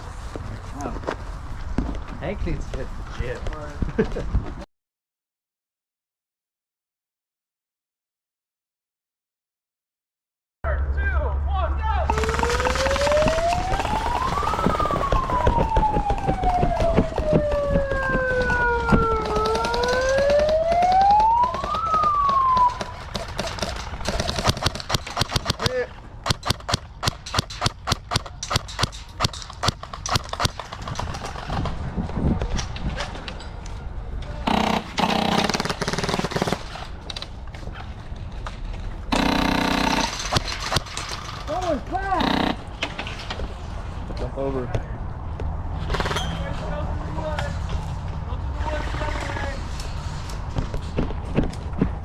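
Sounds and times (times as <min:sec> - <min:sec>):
siren wailing: 0:12.1 - 0:23.1
airsoft guns firing full auto: 0:12.1 - 0:31.5, 0:34.5 - 0:36.8, 0:39.1 - 0:41.1, 0:42.2 - 0:42.7.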